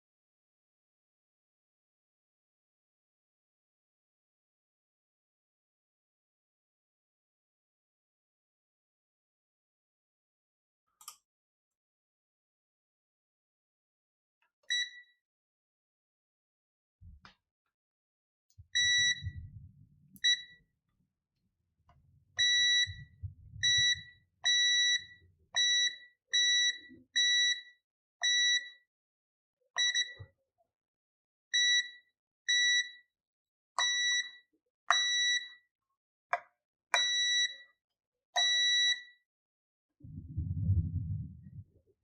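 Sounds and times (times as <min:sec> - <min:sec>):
multimeter short high beeps: 0:18.8 - 0:20.6, 0:22.4 - 0:28.8.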